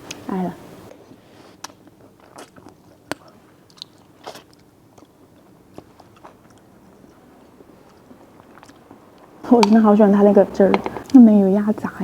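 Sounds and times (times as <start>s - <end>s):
person chewing food: 0.9s - 9.4s
wet mouth clicks and smacks: 1.6s - 6.6s.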